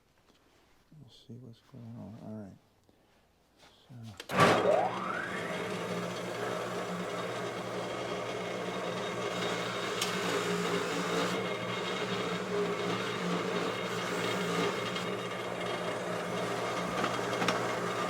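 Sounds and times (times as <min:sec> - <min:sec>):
bench buffer motor hum and whine: 0:04.6 - 0:18.0.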